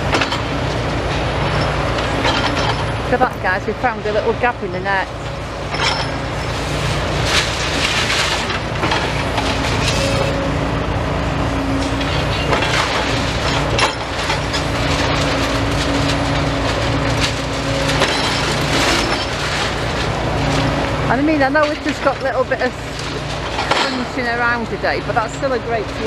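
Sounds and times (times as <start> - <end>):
excavator diesel engine running: 0.0 - 26.0
debris cracking and splintering: 6.9 - 10.3, 11.7 - 24.6.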